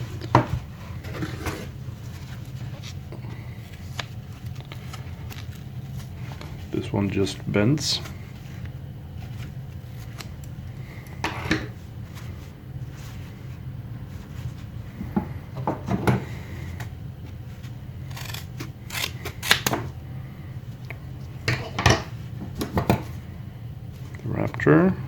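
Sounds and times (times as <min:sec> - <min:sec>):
shears snipping thick material: 0:18.1 - 0:19.8.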